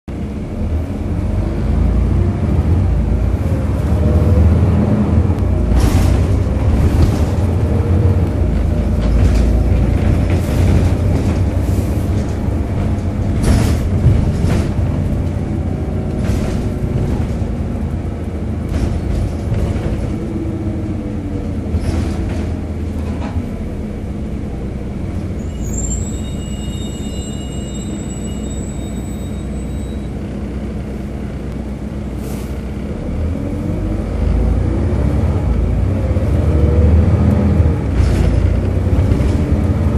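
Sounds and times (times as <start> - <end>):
bus engine low rumble: 0.0 - 39.9
bus body rattles: 2.4 - 25.4, 33.8 - 39.9
high-pitched squeal: 25.4 - 30.2.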